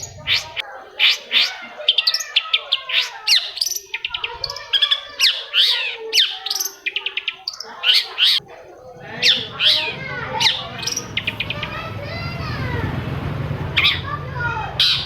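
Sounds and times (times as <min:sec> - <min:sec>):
shrike singing chattering song: 0:00.0 - 0:15.0.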